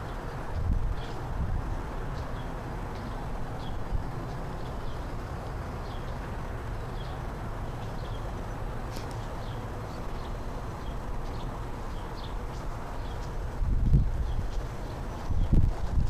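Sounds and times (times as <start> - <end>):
small birds chirping: 0.0 - 15.7.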